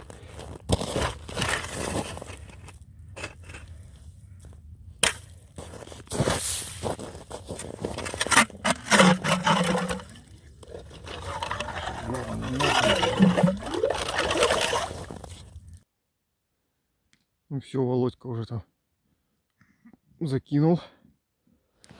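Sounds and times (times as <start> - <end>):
ice crunching and scraping: 0.0 - 4.1, 5.0 - 15.8
water and slush sloshing: 8.3 - 15.4.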